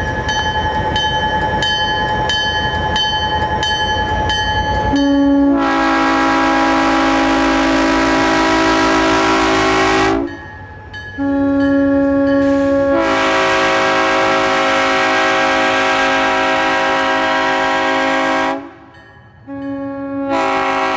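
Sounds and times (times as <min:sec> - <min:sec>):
locomotive air horn chord: 0:04.9 - 0:10.4, 0:11.2 - 0:18.9, 0:19.5 - 0:20.9.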